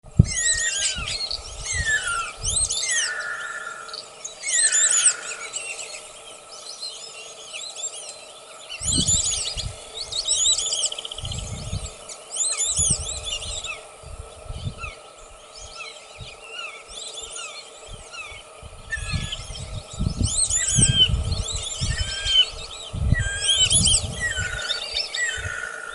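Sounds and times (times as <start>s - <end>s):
ducks whistling: 0.3s - 8.2s, 20.2s - 25.9s.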